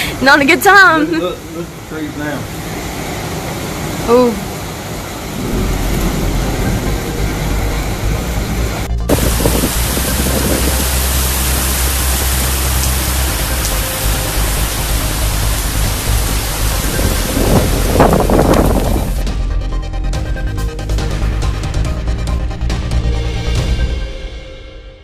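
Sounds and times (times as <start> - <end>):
strong storm wind rushing: 2.4 - 19.2
wind rumble on microphone: 5.2 - 19.2.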